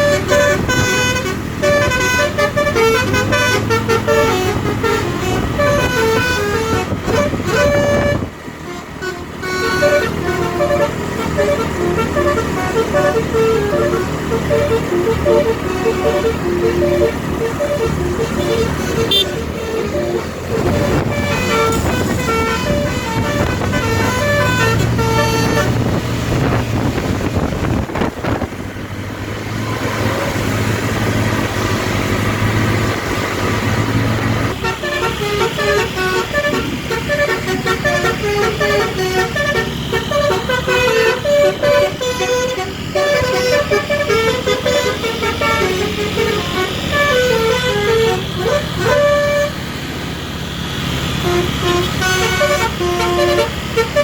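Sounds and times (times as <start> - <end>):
air horns playing a tune: 0.0 - 28.4, 29.4 - 54.0
engine rumble: 0.0 - 54.0
road noise: 0.0 - 54.0.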